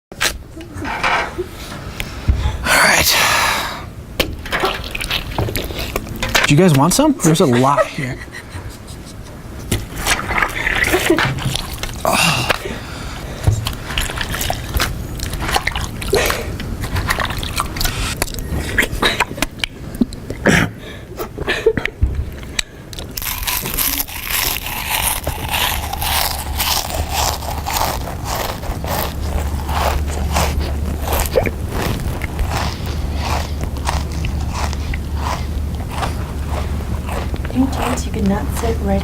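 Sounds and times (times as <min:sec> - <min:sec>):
person chewing food loudly: 0:04.6 - 0:06.3, 0:09.8 - 0:20.8, 0:21.4 - 0:39.0.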